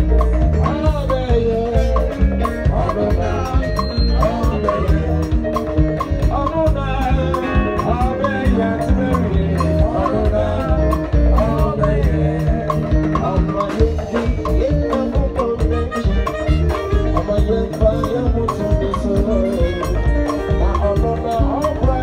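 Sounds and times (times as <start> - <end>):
live band playing gospel music: 0.0 - 22.0
people singing: 0.2 - 15.9.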